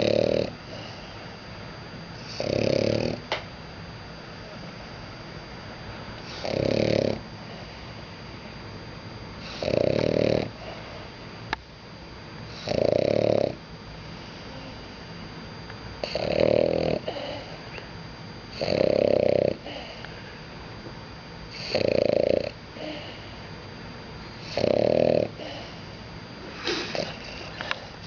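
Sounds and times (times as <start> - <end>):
dog snoring: 0.0 - 1.2, 2.2 - 3.4, 6.2 - 7.7, 9.4 - 10.9, 12.5 - 13.6, 16.0 - 17.8, 18.5 - 20.0, 21.5 - 23.2, 24.3 - 25.8, 26.4 - 28.0.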